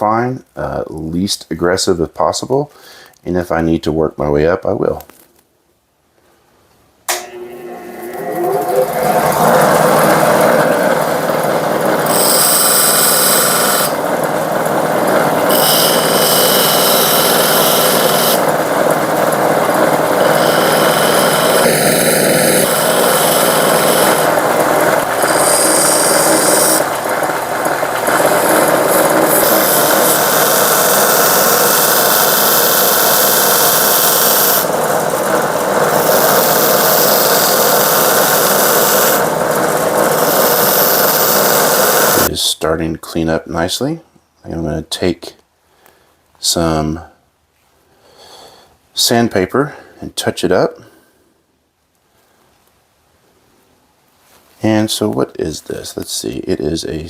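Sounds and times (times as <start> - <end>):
belt sander running: 7.1 - 42.3
steel scrubbing on sanding belt: 15.5 - 18.4, 20.1 - 24.4, 25.2 - 26.9, 28.2 - 39.4, 40.0 - 42.3.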